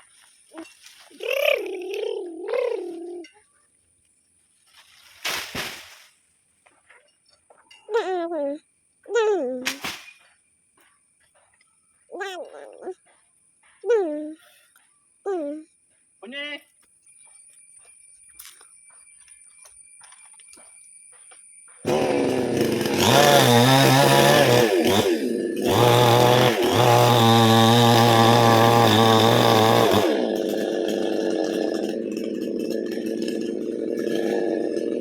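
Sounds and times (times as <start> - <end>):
chainsaw engine revving: 21.8 - 35.0.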